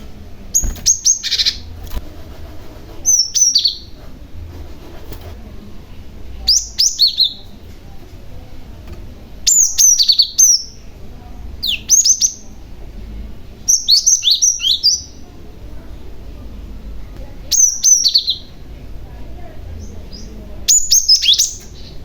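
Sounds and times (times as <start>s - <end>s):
bird chirping: 0.5s - 1.8s, 3.0s - 4.0s, 6.4s - 7.5s, 9.4s - 10.8s, 11.6s - 12.5s, 13.7s - 15.2s, 17.5s - 18.6s, 19.8s - 22.0s.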